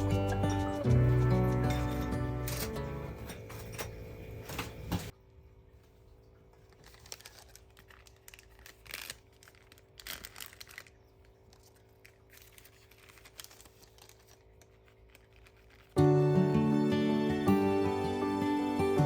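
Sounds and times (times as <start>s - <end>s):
low room hum: 0.1s - 16.0s
crinkling rustles: 5.8s - 16.0s
small objects rustling and clicking: 6.5s - 16.0s.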